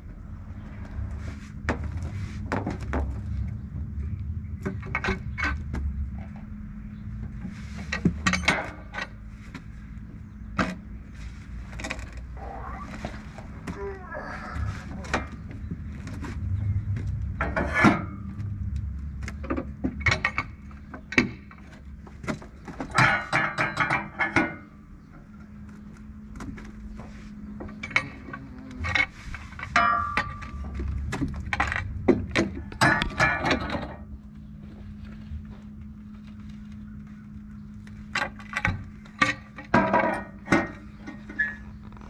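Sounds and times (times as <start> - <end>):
metal clanks: 7.9 - 9.2, 17.3 - 18.4, 19.4 - 24.7, 27.6 - 34.1, 38.1 - 41.6.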